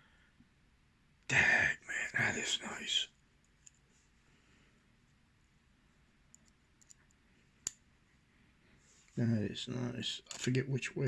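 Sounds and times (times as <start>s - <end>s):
small metal clicks: 6.3s - 7.8s.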